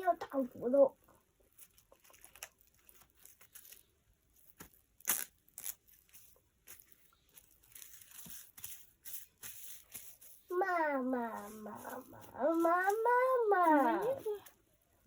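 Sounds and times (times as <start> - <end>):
faint rustling and crinkling: 0.0 - 15.0.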